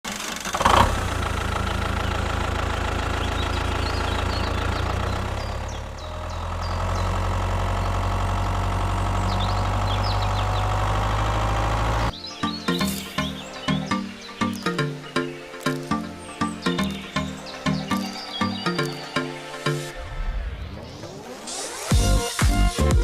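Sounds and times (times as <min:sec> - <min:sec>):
small engine running: 0:00.1 - 0:12.1
music: 0:12.1 - 0:23.0.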